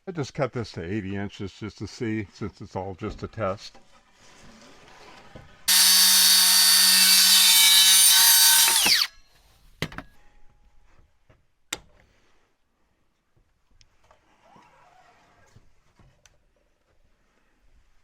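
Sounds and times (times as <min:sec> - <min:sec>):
power saw cutting wood: 0:05.7 - 0:09.1.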